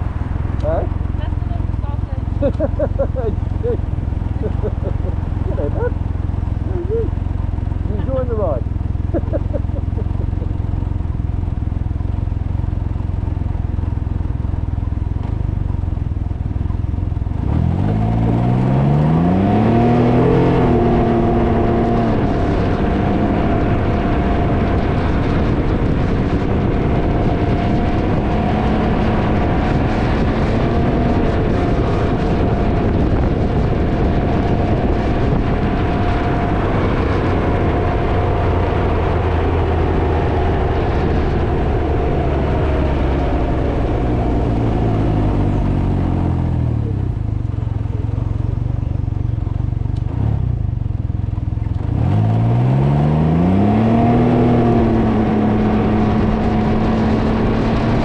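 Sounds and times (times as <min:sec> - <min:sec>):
motorbike engine rumbling: 0:00.0 - 0:58.0
wind buffeting microphone: 0:17.6 - 0:58.0.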